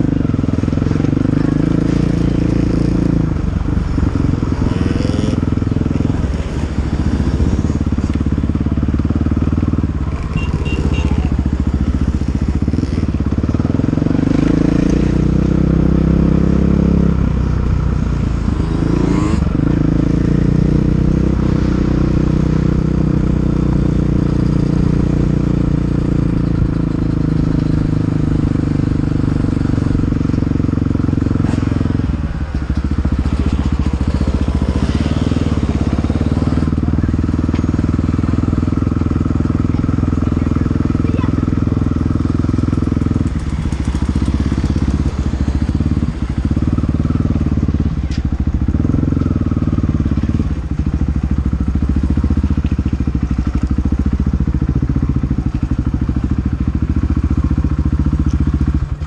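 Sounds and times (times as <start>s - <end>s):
dirt bike engine revving: 0.6s - 7.9s, 9.5s - 17.2s, 18.3s - 32.2s, 33.0s - 47.7s.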